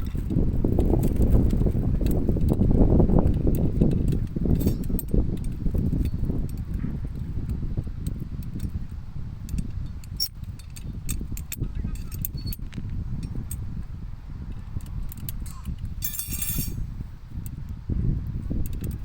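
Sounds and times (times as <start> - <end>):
steady low rumble: 0.0 - 19.0
light clicks and clinks: 3.2 - 13.9, 14.5 - 17.6.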